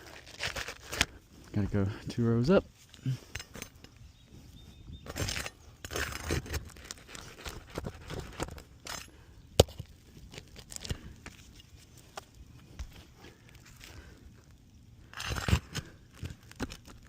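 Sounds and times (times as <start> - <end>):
hand tools scraping on shingles: 5.1 - 9.1.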